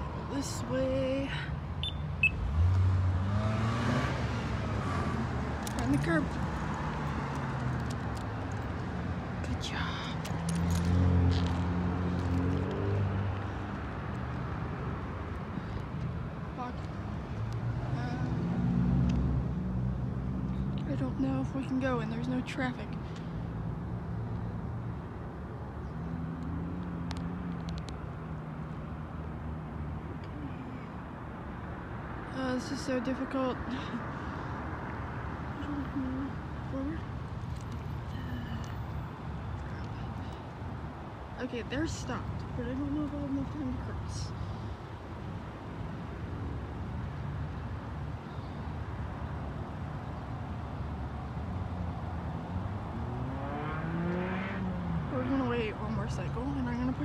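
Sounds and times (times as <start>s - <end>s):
vehicle engines rumbling: 0.0s - 57.0s
vehicle engine speeding up: 53.0s - 54.9s.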